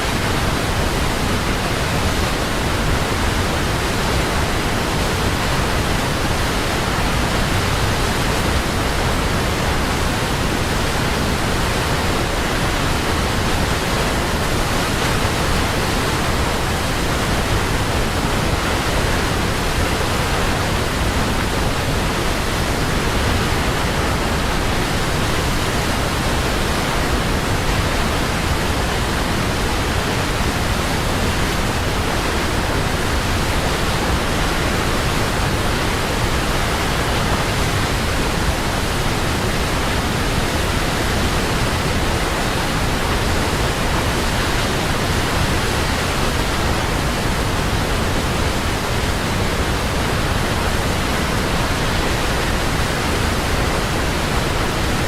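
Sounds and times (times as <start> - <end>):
waterfall roaring: 0.0 - 55.0.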